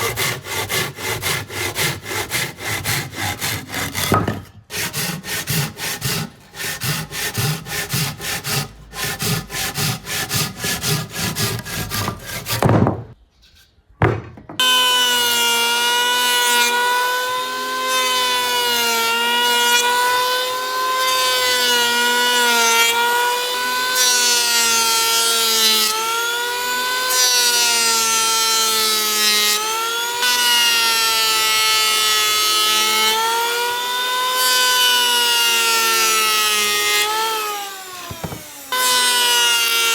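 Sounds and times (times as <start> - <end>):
wood being hand-sawn: 0.0 - 12.7, 14.6 - 39.9
electric power tool whine: 29.6 - 39.9.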